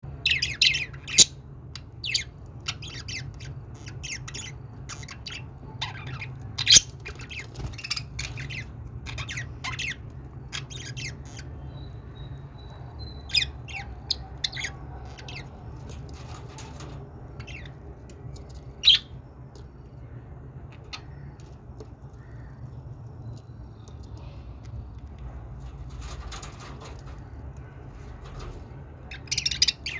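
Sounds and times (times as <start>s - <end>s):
steady low hum: 0.0s - 29.9s
budgerigars chirping and squawking: 0.2s - 17.8s, 18.8s - 19.2s, 28.0s - 29.9s.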